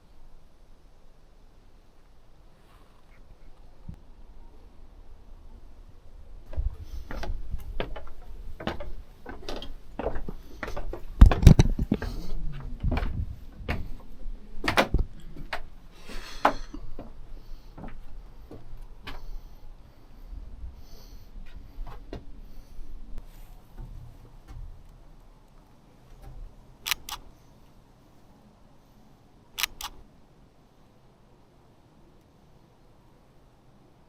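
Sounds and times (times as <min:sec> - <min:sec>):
irregular clicks and knocks: 0:06.5 - 0:14.0.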